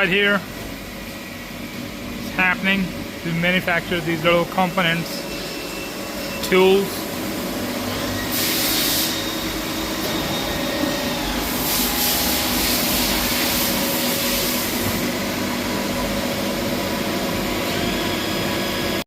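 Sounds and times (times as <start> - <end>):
machines droning: 0.0 - 8.5, 9.1 - 19.0
high hissing rush: 11.2 - 14.8.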